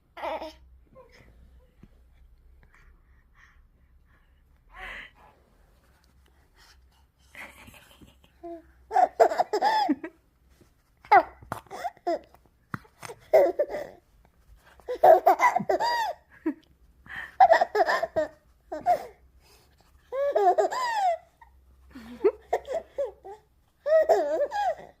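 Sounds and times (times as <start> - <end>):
baby laughing: 7.5 - 10.1, 11.1 - 14.0, 14.8 - 16.3, 17.4 - 19.1, 20.1 - 21.5, 22.2 - 25.0.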